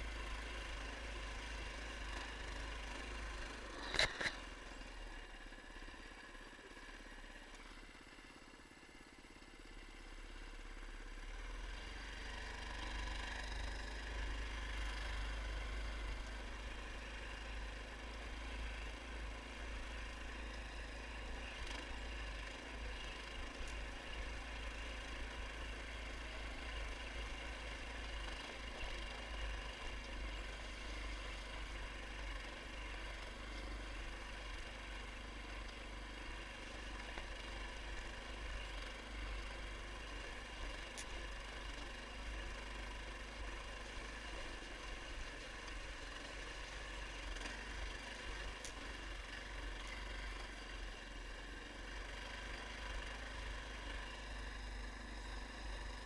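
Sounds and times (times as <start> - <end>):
all-terrain vehicle engine running: 0.0 - 56.0.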